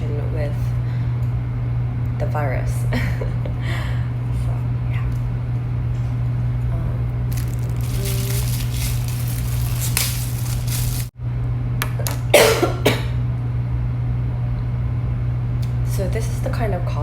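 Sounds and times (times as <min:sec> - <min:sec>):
steady low hum: 0:00.0 - 0:17.0
rustling handling noise: 0:07.3 - 0:11.1
woman coughing: 0:12.3 - 0:13.2.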